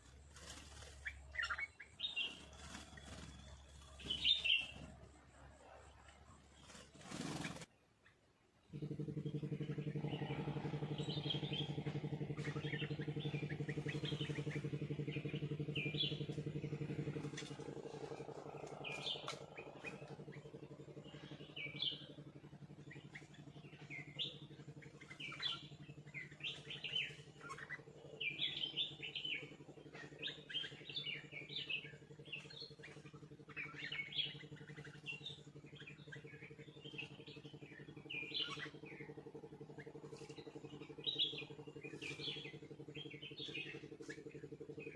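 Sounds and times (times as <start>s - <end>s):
birds chirping: 0.0s - 44.9s
engine drone: 0.0s - 44.9s.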